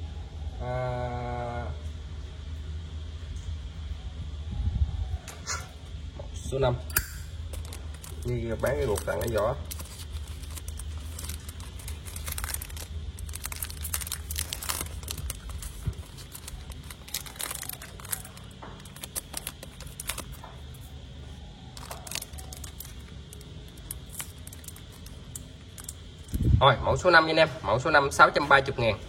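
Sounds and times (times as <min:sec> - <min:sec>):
steady low hum: 0:00.0 - 0:29.0
packaging rustling: 0:07.4 - 0:21.0, 0:21.7 - 0:26.2.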